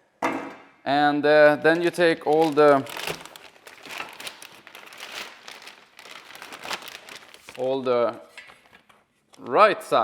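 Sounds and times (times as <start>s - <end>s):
plastic wrapping crinkling: 1.5s - 9.4s.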